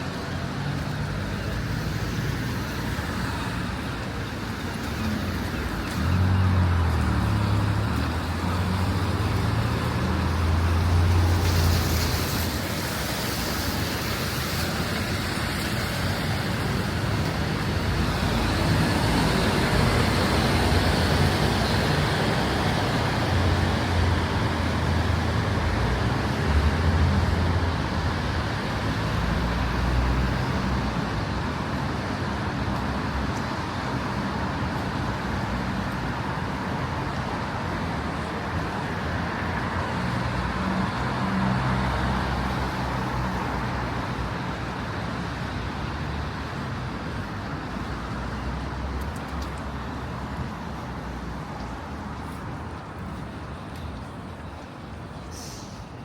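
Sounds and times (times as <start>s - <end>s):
motor vehicles passing: 0.0s - 31.1s.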